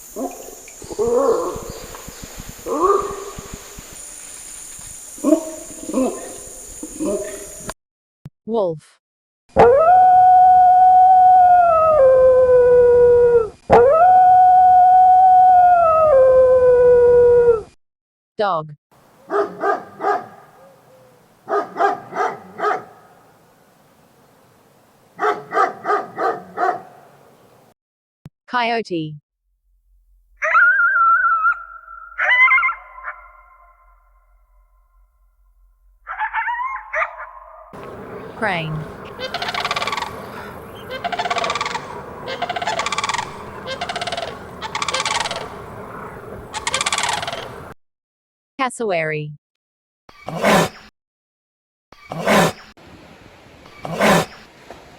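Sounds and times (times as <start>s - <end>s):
dog barking: 0.2s - 1.6s, 2.7s - 3.4s, 5.2s - 6.3s, 7.0s - 7.4s, 19.2s - 20.8s, 21.4s - 23.2s, 25.2s - 27.2s, 32.2s - 33.4s, 36.1s - 37.8s
crane trumpeting calls: 19.0s - 23.5s, 30.4s - 34.2s, 36.1s - 47.7s.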